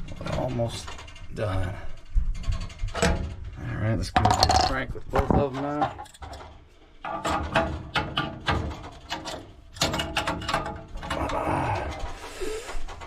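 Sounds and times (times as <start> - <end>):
wrench metallic clicks and knocks: 4.2 - 11.2.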